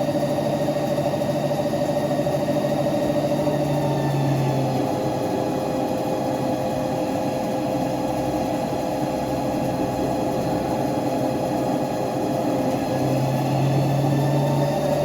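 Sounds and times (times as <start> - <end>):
lathe machining with whine: 0.0 - 15.0.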